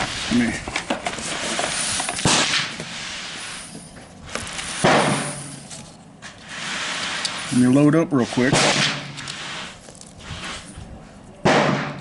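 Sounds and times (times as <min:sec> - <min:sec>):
sharp bangs: 0:02.2 - 0:02.9, 0:04.7 - 0:05.6, 0:08.4 - 0:09.7, 0:11.4 - 0:12.0
wind buffeting microphone: 0:10.2 - 0:11.2.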